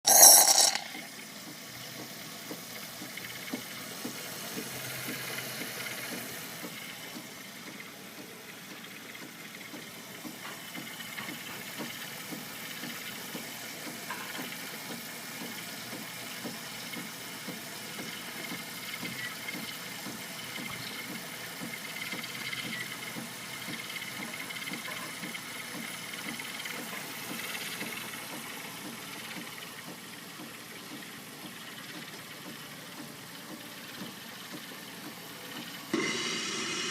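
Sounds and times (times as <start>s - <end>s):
coffee running into cup: 0.0s - 1.2s
coffee machine pump buzzing: 0.0s - 30.2s, 33.8s - 36.9s
short loud burst: 36.0s - 36.9s.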